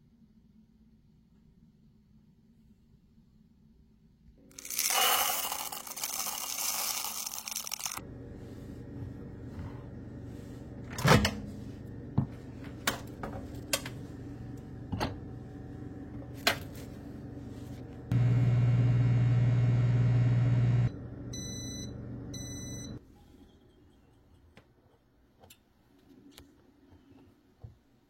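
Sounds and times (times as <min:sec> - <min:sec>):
loud electric hum: 0:04.5 - 0:23.0.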